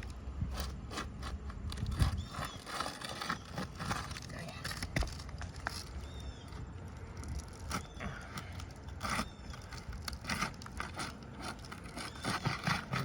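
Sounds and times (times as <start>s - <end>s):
roof shingle scraping and crackling: 0.0s - 13.0s.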